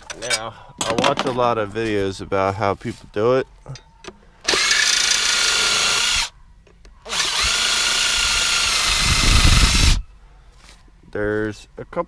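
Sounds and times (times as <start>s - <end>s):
power drill whining: 4.5s - 6.3s, 7.1s - 10.0s.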